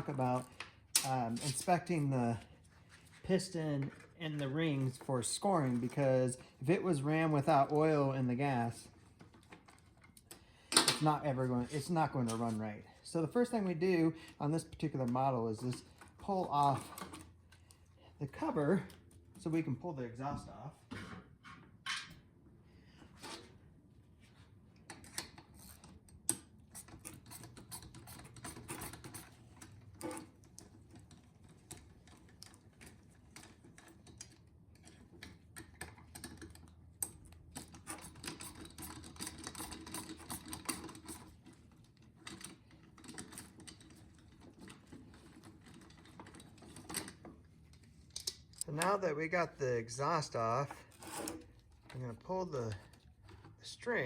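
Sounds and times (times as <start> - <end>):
rapid clicking of hand tools: 25.6 - 41.4.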